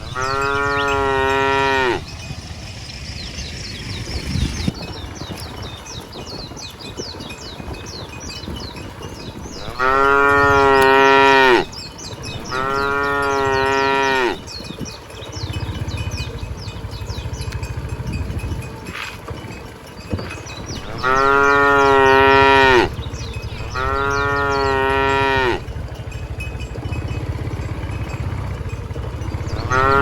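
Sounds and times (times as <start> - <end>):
cow mooing: 0.0 - 2.2, 9.6 - 14.6, 20.8 - 25.7, 29.4 - 30.0.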